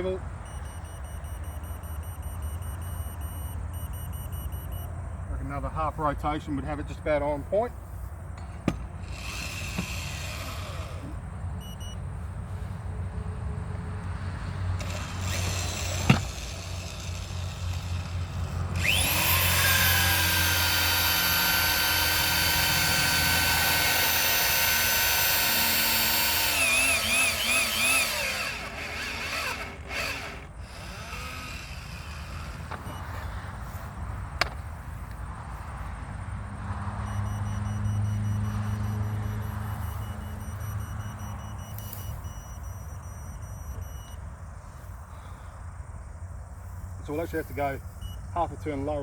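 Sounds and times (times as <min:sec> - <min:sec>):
power driver motor whining: 0:08.7 - 0:11.9, 0:14.8 - 0:33.2, 0:37.1 - 0:44.2.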